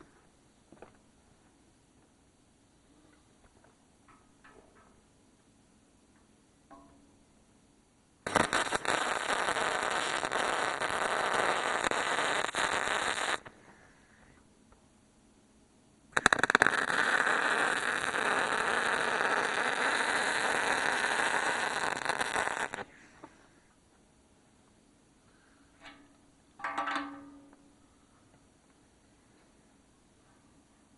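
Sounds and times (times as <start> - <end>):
welder arc crackling: 8.2 - 13.5, 16.2 - 22.9.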